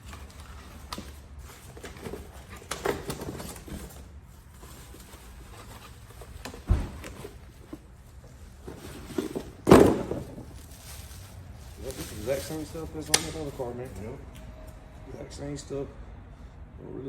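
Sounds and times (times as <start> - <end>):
cardboard rustling: 0.0 - 14.0
heavy thump: 9.3 - 10.6.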